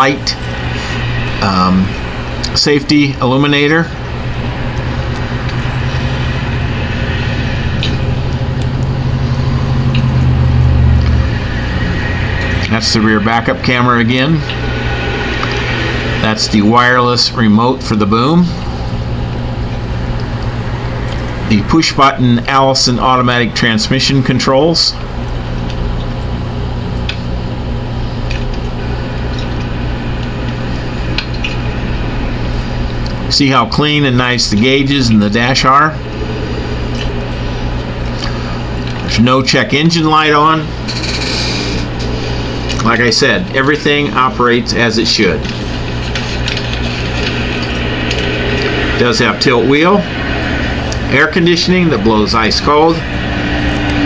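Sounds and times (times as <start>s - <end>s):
diesel truck engine idling: 0.0s - 54.0s.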